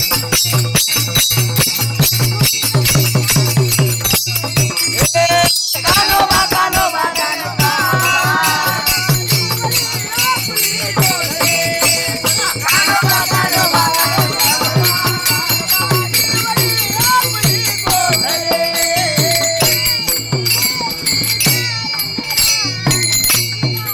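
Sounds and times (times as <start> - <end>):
hand cymbals clashing: 0.0 - 23.9
steady drum beat: 0.0 - 23.9
woman singing: 5.4 - 19.9.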